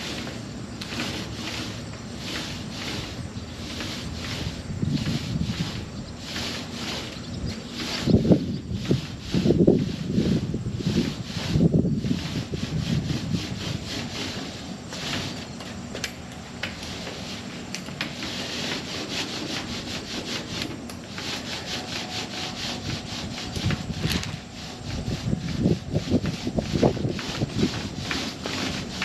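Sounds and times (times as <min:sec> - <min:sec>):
rubbing strokes on a surface: 0:00.0 - 0:16.0, 0:16.6 - 0:29.0.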